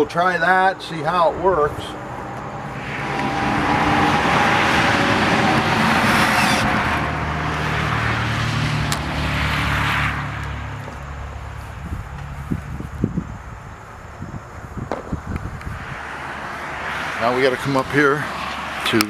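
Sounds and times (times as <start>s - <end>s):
car driving past: 1.2s - 11.7s, 15.8s - 19.0s.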